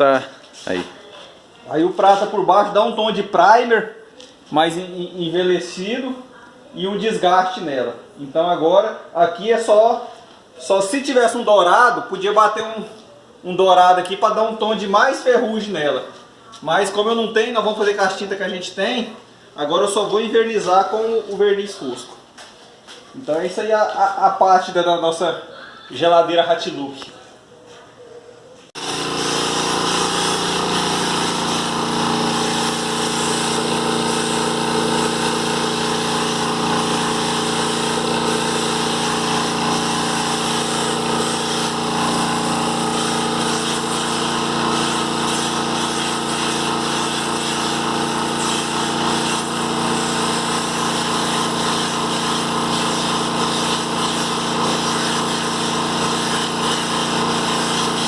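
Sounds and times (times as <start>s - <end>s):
air compressor running: 28.8s - 58.0s
spray gun hissing: 28.8s - 58.0s.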